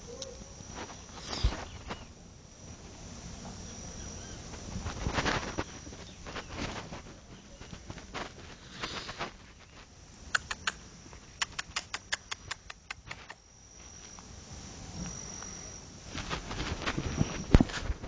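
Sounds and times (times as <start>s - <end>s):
high cricket-like trill: 0.0s - 18.0s
rabbits crunching food: 0.1s - 2.1s, 3.7s - 13.4s.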